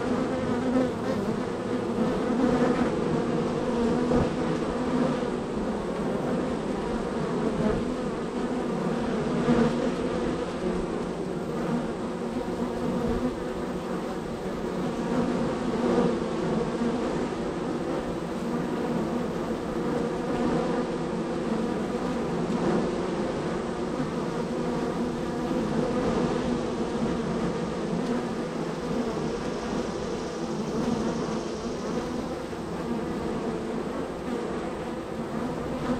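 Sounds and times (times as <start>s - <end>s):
bees buzzing: 0.0s - 35.9s.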